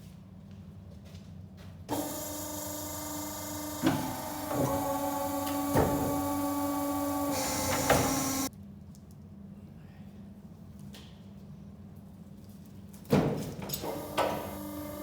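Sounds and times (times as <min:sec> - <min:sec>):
machine whining: 0:01.9 - 0:08.5.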